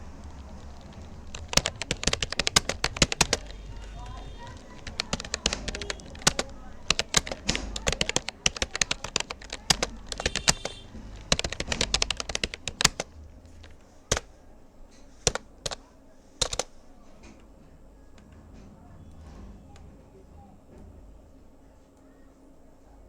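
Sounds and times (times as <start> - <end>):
keyboard key clicks: 0.0 - 14.3, 15.3 - 15.8, 16.4 - 16.7.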